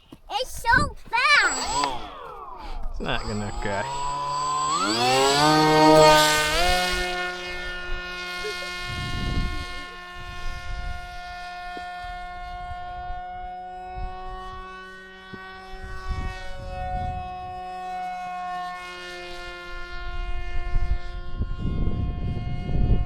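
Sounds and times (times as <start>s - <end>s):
wind buffeting microphone: 0.0s - 14.7s, 19.9s - 23.0s
model plane motor whining: 0.0s - 23.0s.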